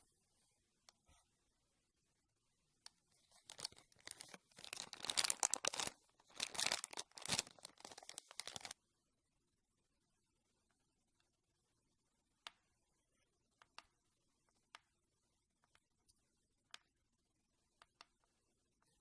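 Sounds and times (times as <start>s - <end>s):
slime crackling when squeezed: 3.5s - 8.7s.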